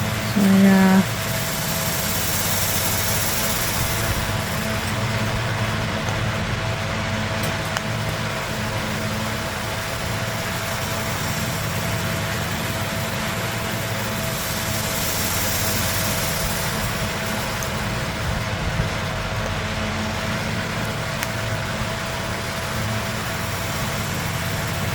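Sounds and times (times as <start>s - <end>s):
steady machine hum: 0.0s - 24.9s.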